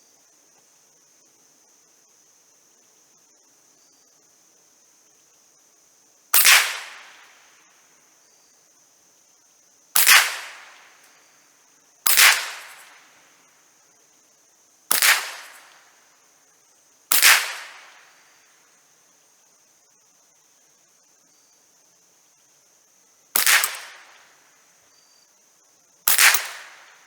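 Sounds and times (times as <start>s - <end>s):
rifle shots with echo: 6.4s - 7.4s, 10.0s - 11.0s, 12.1s - 13.2s, 14.9s - 15.9s, 17.1s - 18.2s, 23.4s - 24.4s, 26.1s - 27.0s.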